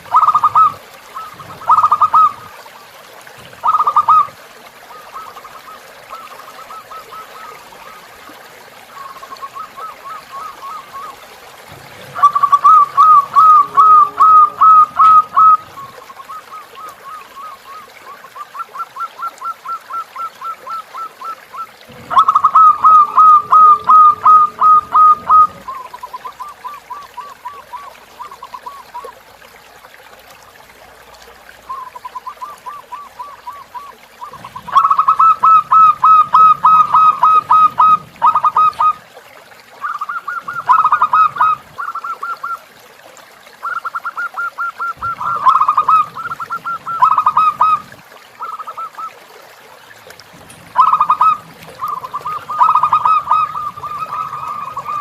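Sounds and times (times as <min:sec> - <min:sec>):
dove rapid staccato cooing: 0:00.0 - 0:02.6, 0:03.6 - 0:04.3, 0:11.9 - 0:29.1, 0:31.8 - 0:39.0, 0:39.8 - 0:42.6, 0:43.6 - 0:49.1, 0:50.7 - 0:55.0.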